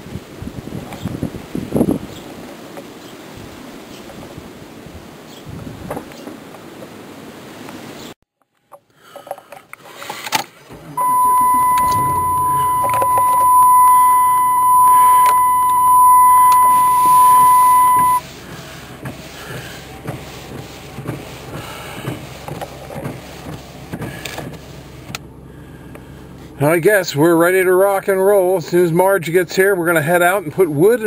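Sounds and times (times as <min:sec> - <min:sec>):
low background rumble: 0:10.7 - 0:26.6
steady electronic tone: 0:11.0 - 0:18.2.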